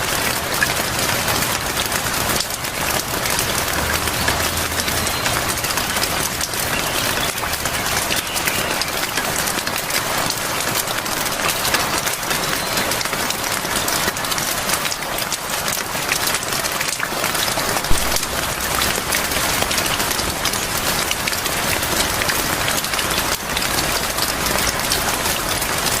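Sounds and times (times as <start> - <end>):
steady rain with drop ticks: 0.0 - 26.0
sharp knock: 17.9 - 18.4.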